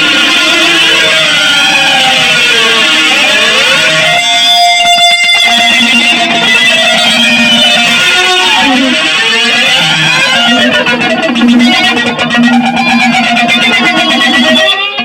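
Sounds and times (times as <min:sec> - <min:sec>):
electric guitar noise jam: 0:00.0 - 0:15.0.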